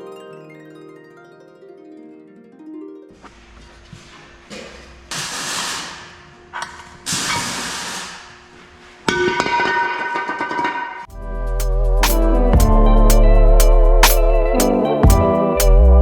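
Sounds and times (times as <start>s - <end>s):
air hissing: 5.1s - 6.4s, 7.0s - 9.1s
metal clang ringing: 9.1s - 11.1s.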